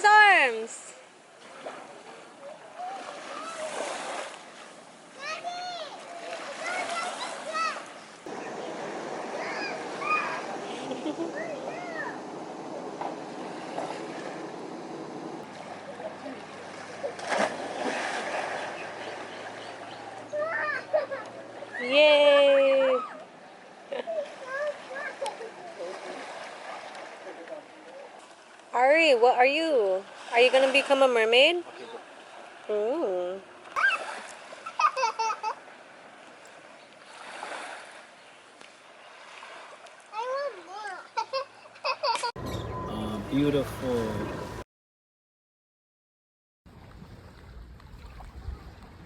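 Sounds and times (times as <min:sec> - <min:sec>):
ocean waves at shore: 0:00.0 - 0:44.6, 0:46.7 - 0:49.0
child squealing: 0:09.4 - 0:10.4, 0:20.3 - 0:22.0, 0:33.8 - 0:34.1.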